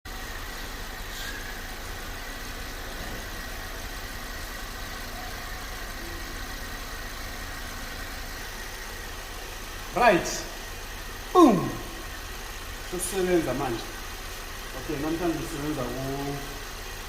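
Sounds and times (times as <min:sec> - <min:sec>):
car engine idling: 0:00.0 - 0:17.0
high tone in engine noise: 0:00.1 - 0:17.0.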